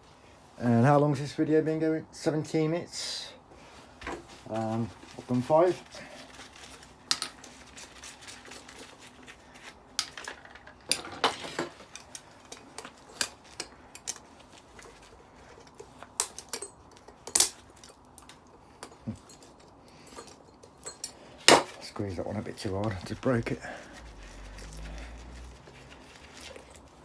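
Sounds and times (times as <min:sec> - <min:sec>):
small metal parts clinking: 0:10.0 - 0:21.9.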